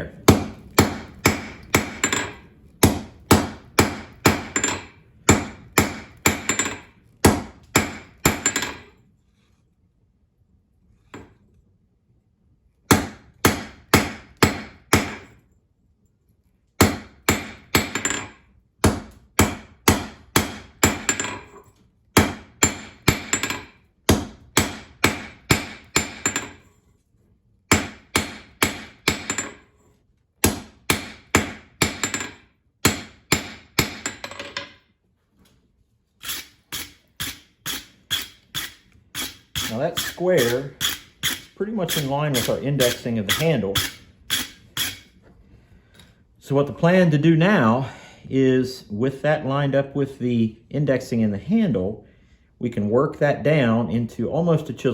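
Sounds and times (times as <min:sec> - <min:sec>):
hammer ringing on hot steel: 0:36.8 - 0:45.0.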